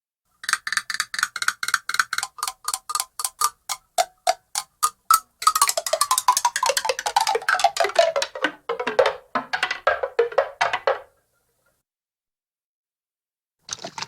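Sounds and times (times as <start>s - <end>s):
cartoon wood-block footsteps: 0.4s - 11.2s.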